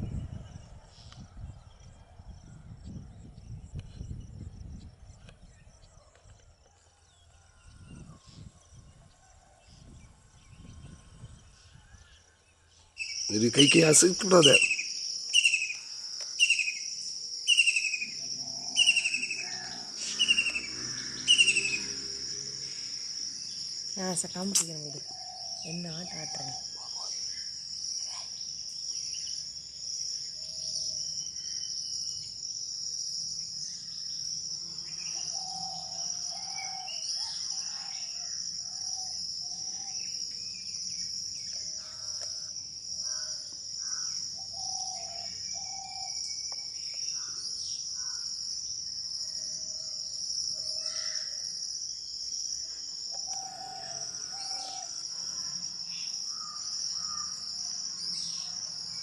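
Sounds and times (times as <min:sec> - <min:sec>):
bird calls: 0:13.0 - 0:22.0, 0:43.0 - 0:48.2
high-pitched insect drone: 0:13.0 - 0:59.0.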